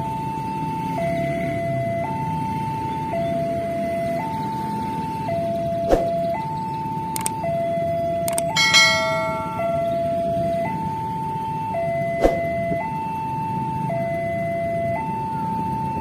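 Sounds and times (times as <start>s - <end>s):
road traffic noise: 0.0s - 16.0s
two-tone level crossing alarm: 0.0s - 16.0s.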